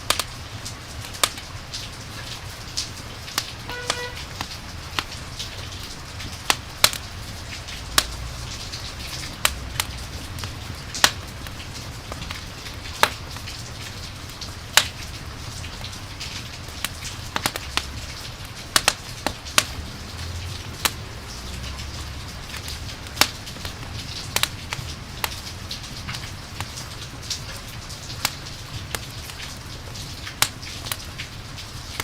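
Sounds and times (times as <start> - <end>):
rain hiss: 0.0 - 32.0
wood fire crackling: 0.0 - 32.0.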